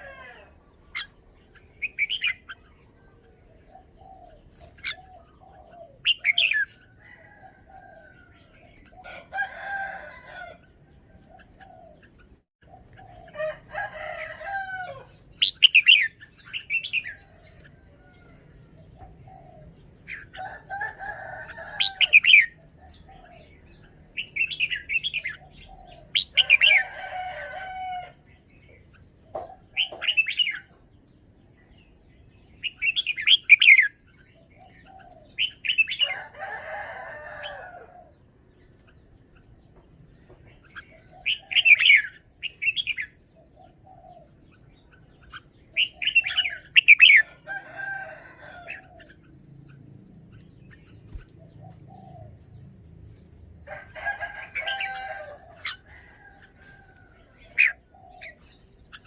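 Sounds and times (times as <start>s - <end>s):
bird singing warbling phrases: 0.0s - 27.5s, 28.3s - 36.4s, 37.3s - 47.8s.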